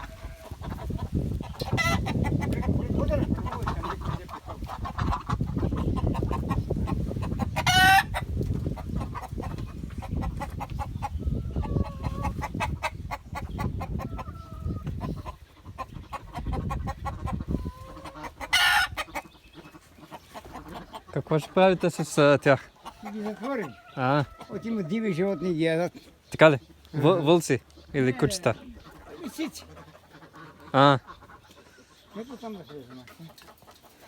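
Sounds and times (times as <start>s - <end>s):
chicken squawks: 0.0s - 21.6s, 28.7s - 34.0s
chickens clucking: 0.0s - 34.0s.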